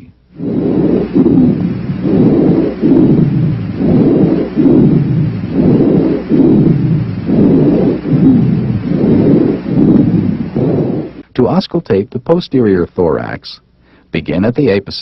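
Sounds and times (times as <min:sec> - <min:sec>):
rumbling breath sound through stethoscope: 0:00.0 - 0:11.3.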